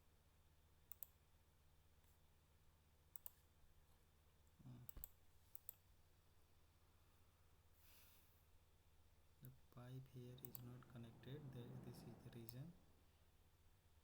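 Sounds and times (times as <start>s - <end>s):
computer mouse clicking: 0.9s - 1.2s, 3.1s - 3.5s, 4.9s - 5.8s, 10.4s - 12.7s
faint murmur: 9.8s - 12.8s.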